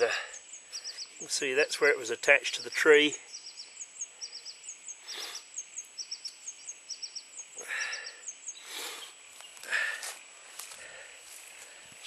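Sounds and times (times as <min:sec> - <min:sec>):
songbird chirping: 0:00.0 - 0:12.0
soft rustling: 0:09.3 - 0:12.0.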